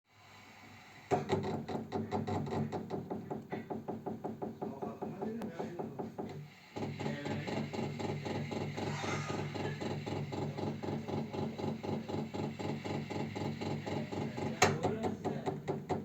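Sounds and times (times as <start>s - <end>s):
radiator ticking rapidly: 1.4s - 16.0s
steady hum: 6.5s - 14.9s.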